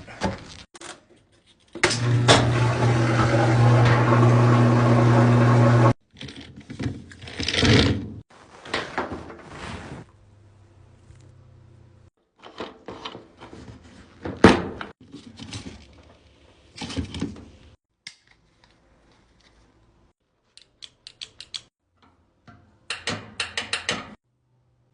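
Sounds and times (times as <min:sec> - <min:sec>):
hard objects knocking and clunking: 0:22.0 - 0:24.2.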